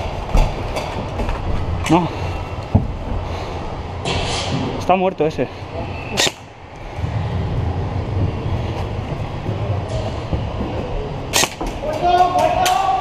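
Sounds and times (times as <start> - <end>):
low rumble: 5.6 - 11.3
airsoft rifle shots: 6.1 - 6.5, 11.3 - 11.7.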